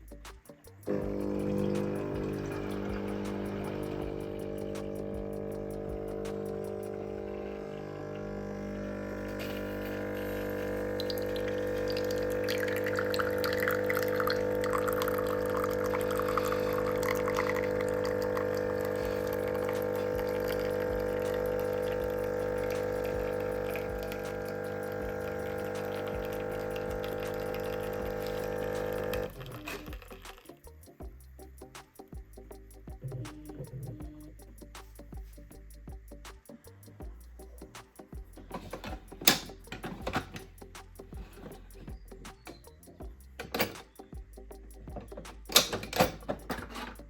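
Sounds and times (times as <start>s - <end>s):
coffee machine pump humming: 0.9s - 30.2s, 38.1s - 47.0s
gurgling splashing liquid: 9.7s - 30.1s.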